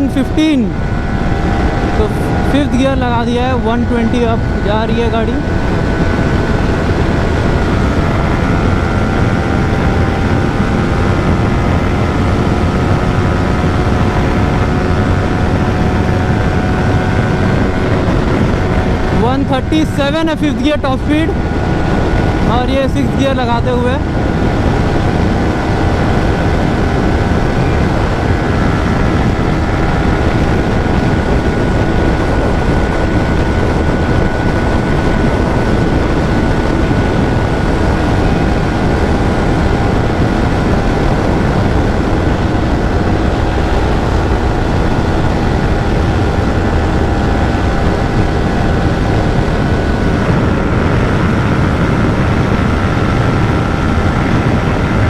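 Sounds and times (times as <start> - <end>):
motorcycle engine at full throttle: 0.0 - 55.0
wind rush over microphone: 0.0 - 55.0.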